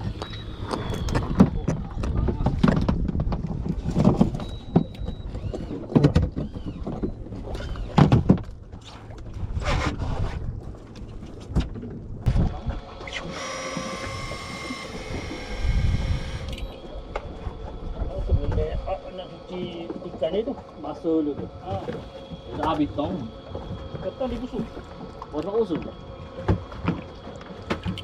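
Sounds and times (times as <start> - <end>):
steady mechanical whine: 0.0 - 2.9, 4.1 - 8.6, 12.2 - 28.0
steady rumble: 6.7 - 28.0.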